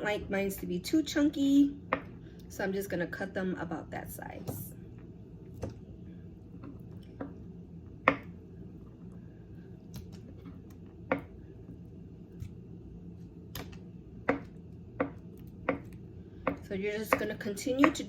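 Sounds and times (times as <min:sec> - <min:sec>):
knife tapping cutting board: 0:08.1 - 0:08.3.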